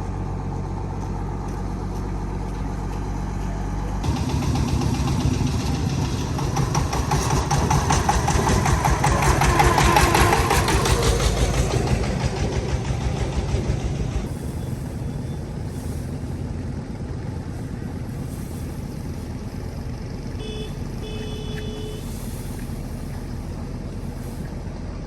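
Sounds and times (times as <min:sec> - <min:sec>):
diesel engine running: 0:00.0 - 0:25.0
horn beeping: 0:20.2 - 0:23.3.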